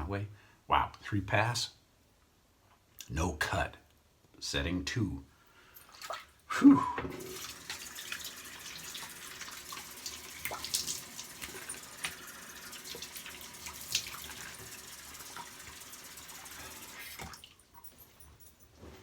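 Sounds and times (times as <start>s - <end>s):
water splashing: 5.9s - 6.4s, 7.2s - 17.8s
tap water running into sink: 7.1s - 17.6s.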